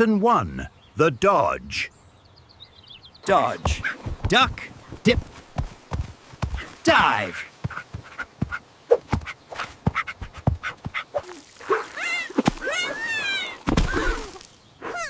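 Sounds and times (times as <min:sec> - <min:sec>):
cartoon kitten crying: 0:12.0 - 0:13.6.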